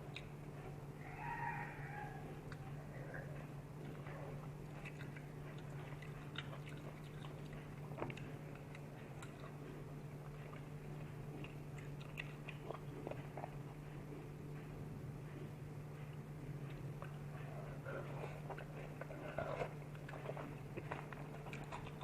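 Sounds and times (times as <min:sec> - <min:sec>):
person chewing food: 0:00.0 - 0:22.0
steady low hum: 0:00.0 - 0:22.0.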